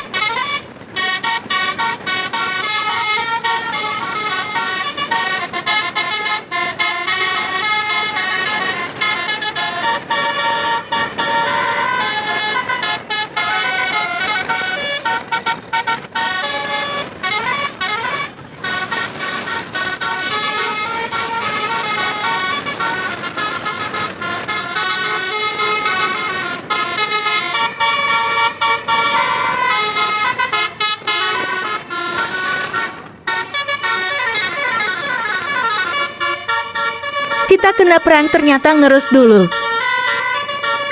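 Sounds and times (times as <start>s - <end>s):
road and engine noise: 0.0s - 18.5s
multi-tone musical bus horn: 0.0s - 40.9s.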